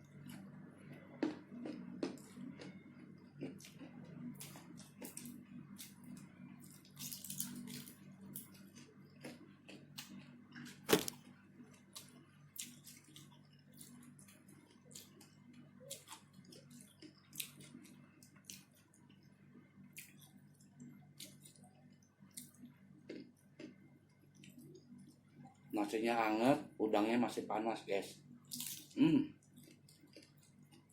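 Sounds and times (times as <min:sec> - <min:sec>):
person chewing: 0:00.1 - 0:11.1, 0:11.7 - 0:18.9, 0:19.9 - 0:23.8, 0:28.5 - 0:30.9.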